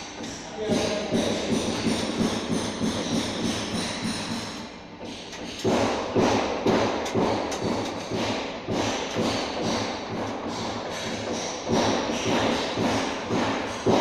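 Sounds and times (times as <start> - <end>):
thumps and knocks of tools: 0.2 - 14.0.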